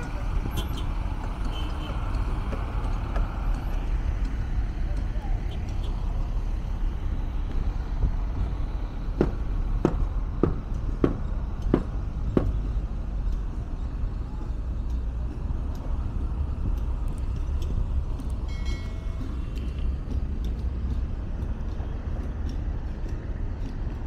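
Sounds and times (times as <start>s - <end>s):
city street traffic rumble: 0.0s - 24.0s
sharp knocks: 9.1s - 12.7s.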